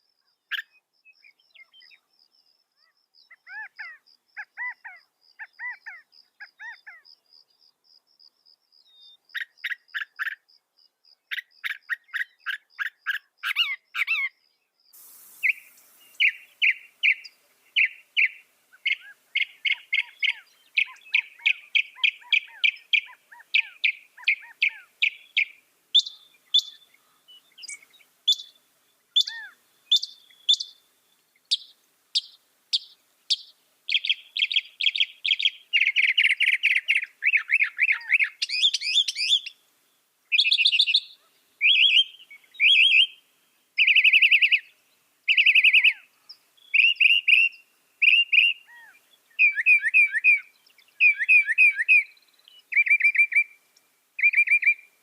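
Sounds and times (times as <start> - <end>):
mockingbird singing: 2.8 - 7.2, 15.2 - 28.6, 29.2 - 30.8, 31.4 - 39.6, 40.3 - 43.2, 43.8 - 44.7, 45.3 - 53.6, 54.2 - 54.9.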